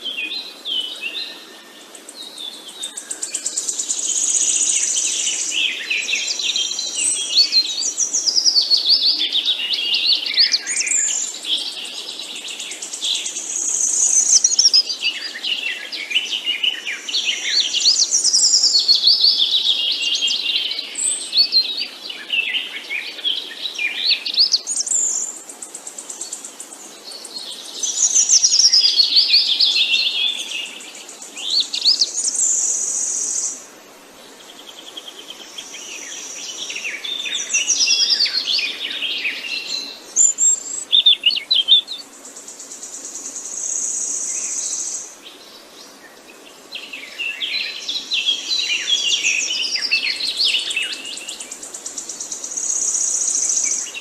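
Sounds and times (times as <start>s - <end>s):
songbirds chirping and singing: 0.0s - 54.0s.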